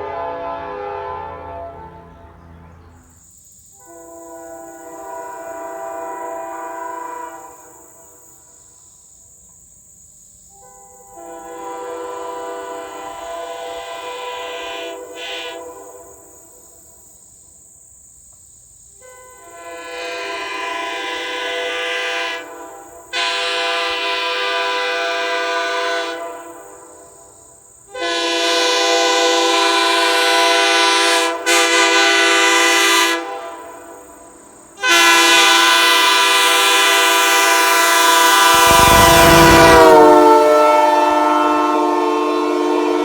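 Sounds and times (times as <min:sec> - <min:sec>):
locomotive air horn chord: 0:00.0 - 0:03.2, 0:03.8 - 0:08.2, 0:10.5 - 0:16.4, 0:19.0 - 0:27.1, 0:27.9 - 0:34.2, 0:34.8 - 0:43.0
low rumble: 0:38.5 - 0:40.6.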